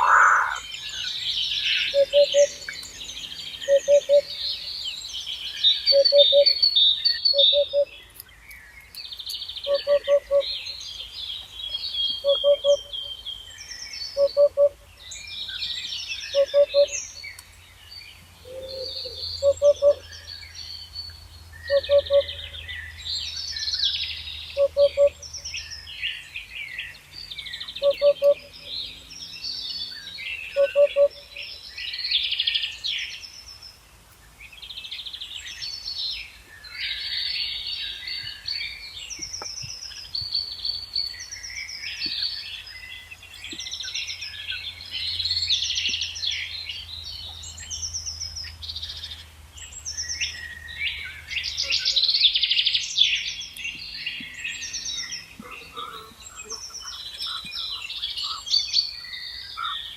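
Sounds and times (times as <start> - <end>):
frog croaking: 0.0 - 0.7
birds chirping: 0.0 - 59.9.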